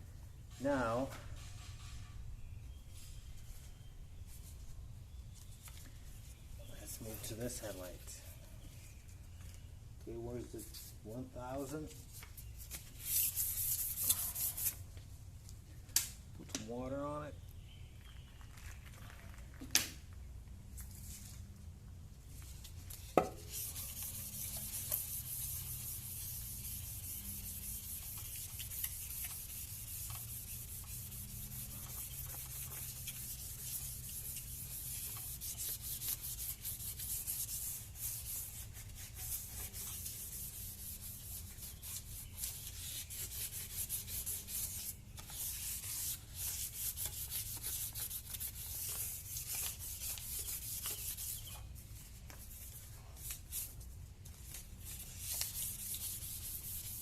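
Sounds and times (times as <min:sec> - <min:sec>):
sandpaper rubbing on plastic: 0:12.7 - 0:14.8, 0:23.4 - 0:53.8, 0:54.8 - 0:57.0.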